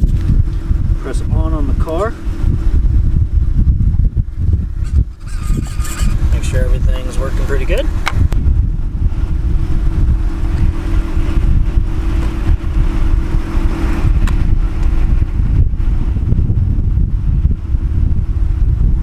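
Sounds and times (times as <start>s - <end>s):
steady low hum: 0.0s - 19.0s
wind buffeting microphone: 0.0s - 19.0s.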